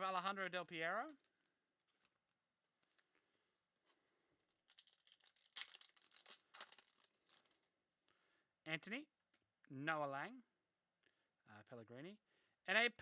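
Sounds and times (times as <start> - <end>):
foil wrapper tearing and crinkling: 4.5 - 7.7.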